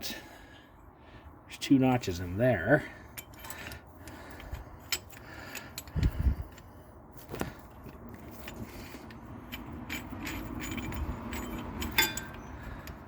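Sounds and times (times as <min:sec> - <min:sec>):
metal tool clicks and scrapes: 0:08.0 - 0:13.0.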